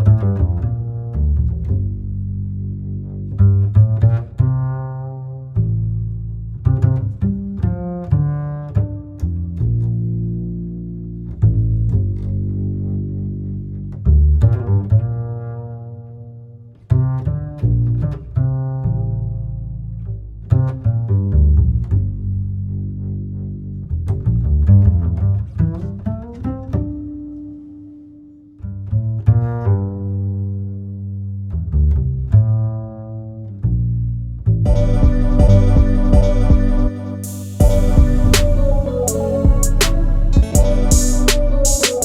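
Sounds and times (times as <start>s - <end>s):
deep low ringing notes: 34.7s - 42.0s.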